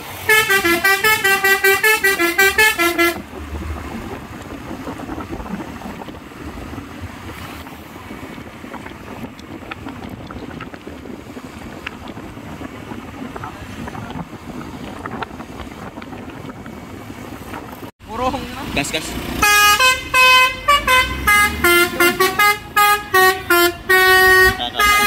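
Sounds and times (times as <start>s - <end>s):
roadside traffic rumble: 0.0s - 25.0s
wind buffeting microphone: 2.5s - 17.9s.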